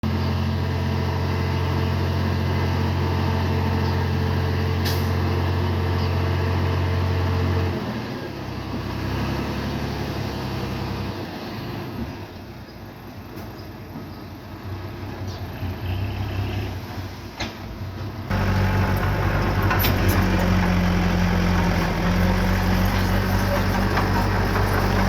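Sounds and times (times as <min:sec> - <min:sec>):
diesel engine humming: 0:18.2 - 0:25.0.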